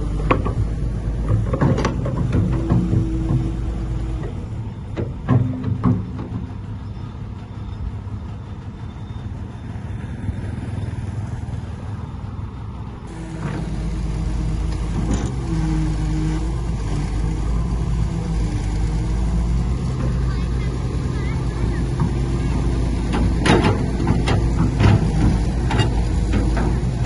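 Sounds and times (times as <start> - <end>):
heavy machinery diesel engine: 0.0 - 27.0.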